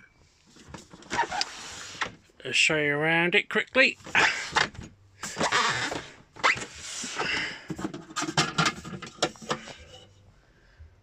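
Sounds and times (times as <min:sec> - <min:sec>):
rubbing handling noise: 0:00.3 - 0:02.4, 0:03.9 - 0:10.3.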